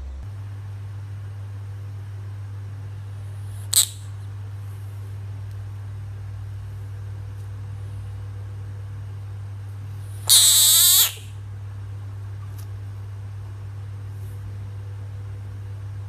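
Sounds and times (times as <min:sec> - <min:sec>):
steady low hum: 0:00.0 - 0:16.0
bullfrog call: 0:03.7 - 0:04.0, 0:10.3 - 0:11.3.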